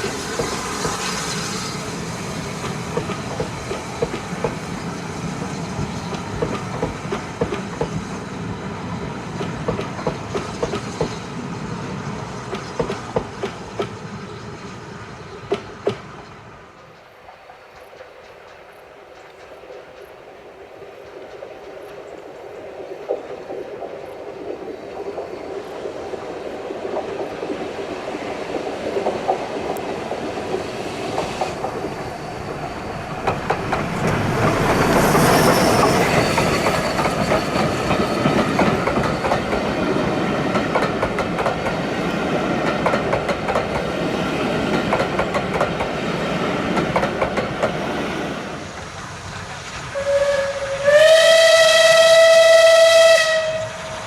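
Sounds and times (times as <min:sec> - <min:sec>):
steam train running past: 0:00.0 - 0:54.0
steam whistle: 0:49.9 - 0:54.0.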